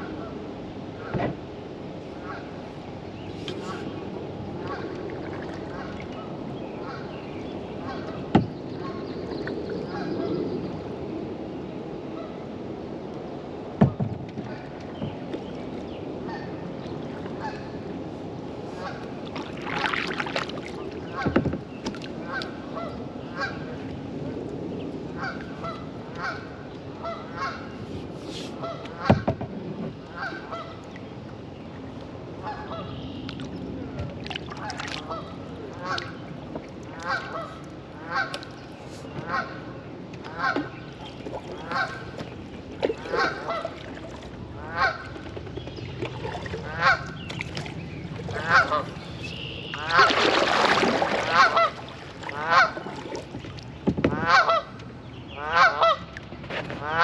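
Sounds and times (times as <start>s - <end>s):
goose honking: 51.3s - 52.8s, 54.2s - 54.7s, 55.4s - 56.0s.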